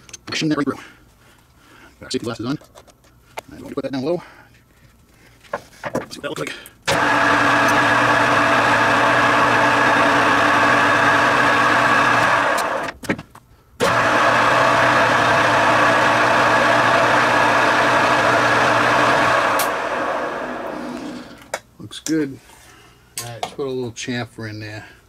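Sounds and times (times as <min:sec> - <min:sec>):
drill cutting metal: 0:06.9 - 0:12.9, 0:13.8 - 0:21.4
metal lathe running: 0:06.9 - 0:12.9, 0:13.8 - 0:21.4.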